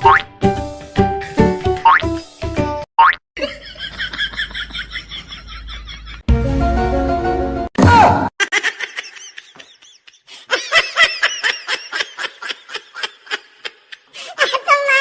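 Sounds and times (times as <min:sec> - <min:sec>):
rapid laughter: 0:03.4 - 0:06.2, 0:08.4 - 0:14.7.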